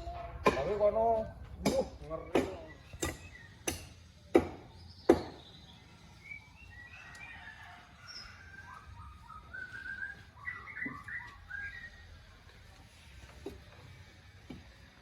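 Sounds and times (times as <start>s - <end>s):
birds chirping: 0.0s - 12.5s
sharp knocks: 0.1s - 5.4s.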